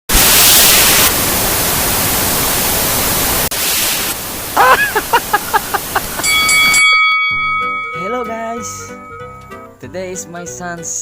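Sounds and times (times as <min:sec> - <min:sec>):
loud static hiss: 0:00.1 - 0:06.8
high wavering chirps: 0:05.8 - 0:09.6.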